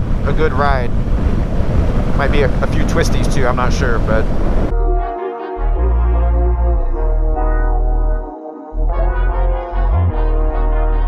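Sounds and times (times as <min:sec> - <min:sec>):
music with heavy bass line: 0:04.7 - 0:11.0.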